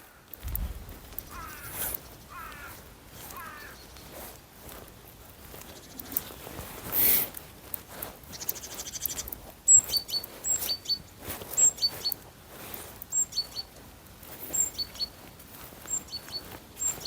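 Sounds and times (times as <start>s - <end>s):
small bird singing: 5.5s - 6.5s, 8.2s - 12.2s, 13.1s - 13.8s, 14.4s - 17.0s
rapid bird trill: 8.3s - 12.2s, 13.1s - 13.7s, 14.5s - 15.2s, 15.9s - 17.0s.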